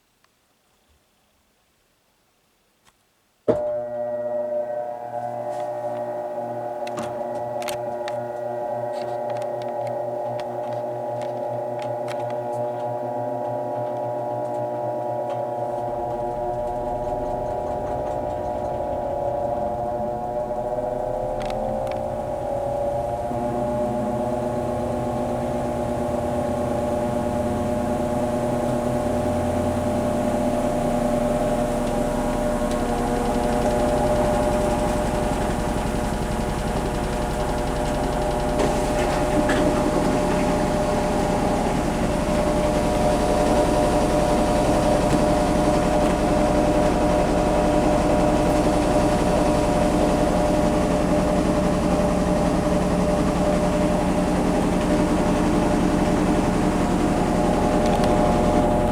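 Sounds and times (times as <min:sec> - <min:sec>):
washing machine spinning: 0:14.9 - 0:58.9.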